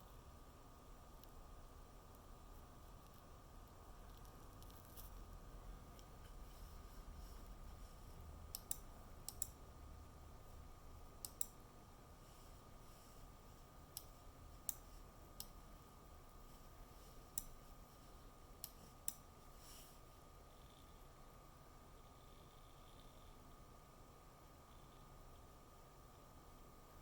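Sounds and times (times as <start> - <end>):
computer fans spinning: 0.0 - 27.0
faint irregular electrical clicks: 0.8 - 21.1.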